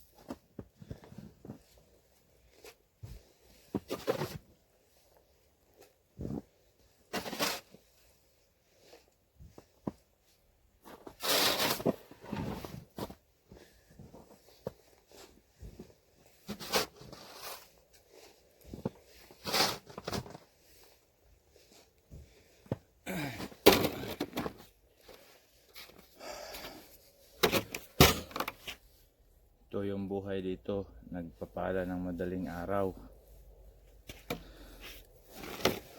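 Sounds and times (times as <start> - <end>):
snow shovel scraping snow: 7.0 - 7.9, 10.9 - 13.2, 16.4 - 21.0, 34.2 - 35.9.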